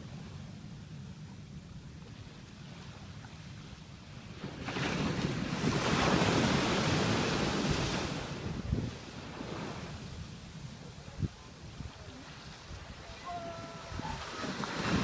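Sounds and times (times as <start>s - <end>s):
surf wave breaking: 4.3s - 10.9s, 11.6s - 15.0s.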